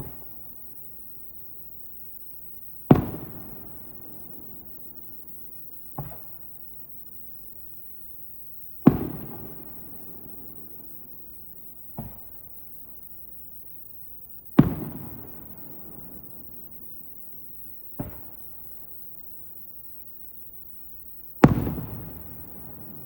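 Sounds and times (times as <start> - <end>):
firework shells booming: 2.9 - 5.1, 8.8 - 10.6, 14.6 - 16.7, 17.9 - 18.6, 21.4 - 23.0.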